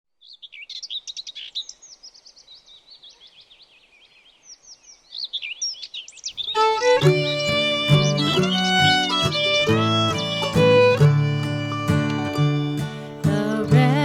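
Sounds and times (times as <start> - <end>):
birds chirping and whistling: 0.3 - 12.7
fiddle and plucked strings: 6.5 - 14.0.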